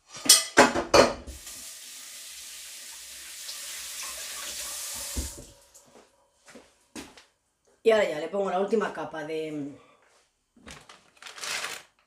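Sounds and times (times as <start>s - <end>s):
kitchen tap running: 1.1s - 5.8s
thump: 5.1s - 5.5s.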